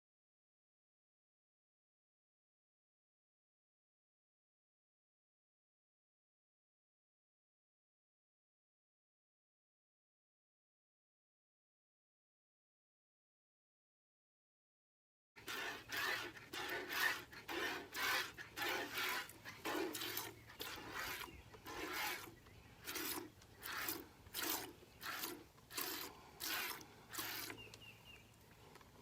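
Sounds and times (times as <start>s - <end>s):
milk squirting into a pail: 15.4s - 27.7s.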